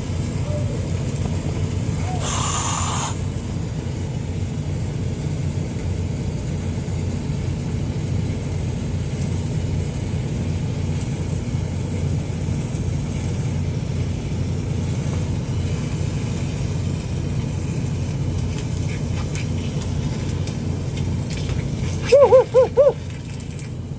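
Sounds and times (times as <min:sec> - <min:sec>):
low engine-like drone: 0:00.0 - 0:23.9
quick rising and falling chirps: 0:22.1 - 0:23.0.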